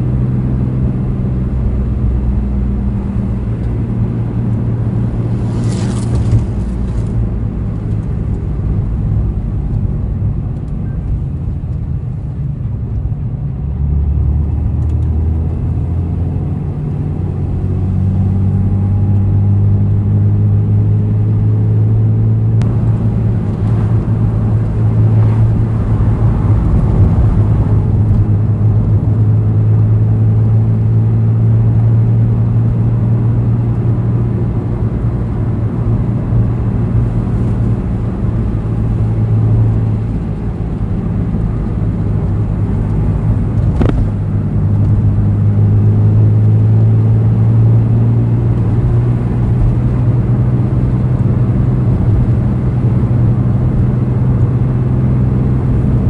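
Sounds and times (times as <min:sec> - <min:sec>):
car engine revving while driving: 0:00.0 - 0:56.0.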